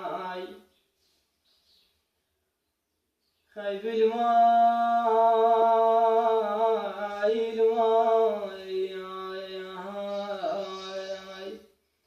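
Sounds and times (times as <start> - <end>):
person singing unaccompanied: 0.0 - 0.7, 3.5 - 11.7.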